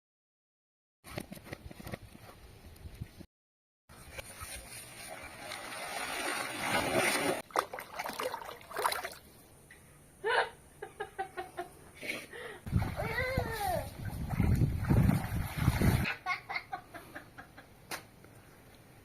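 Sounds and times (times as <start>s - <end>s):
water splashing: 4.8s - 9.3s, 12.7s - 16.1s.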